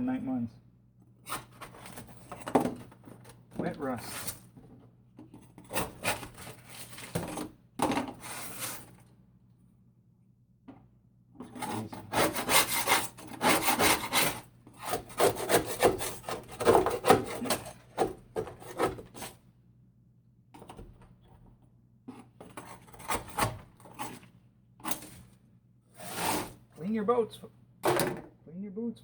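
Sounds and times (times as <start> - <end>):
scraping on rusted metal floor: 26.0 - 26.6.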